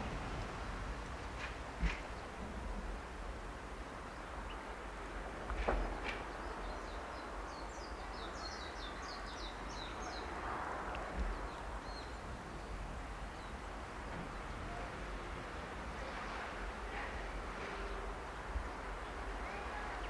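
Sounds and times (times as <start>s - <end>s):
outdoor background hiss: 0.0s - 20.0s
songbird chirping: 5.8s - 16.4s.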